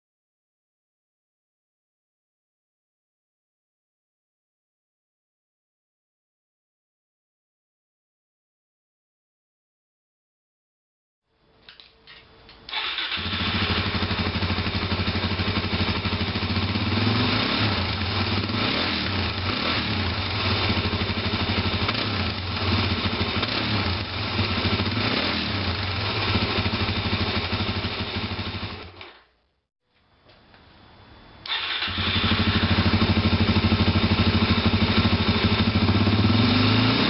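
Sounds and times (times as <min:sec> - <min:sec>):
motorcycle engine cranking: 0:12.7 - 0:14.8, 0:31.4 - 0:35.1
motorcycle engine running: 0:13.1 - 0:29.0, 0:31.6 - 0:37.0.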